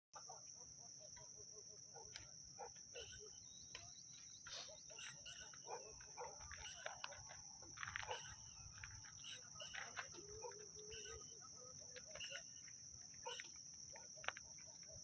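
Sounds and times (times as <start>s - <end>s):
faint insect trill: 0.2s - 15.0s
short chirps and calls: 2.9s - 7.1s, 8.0s - 13.5s.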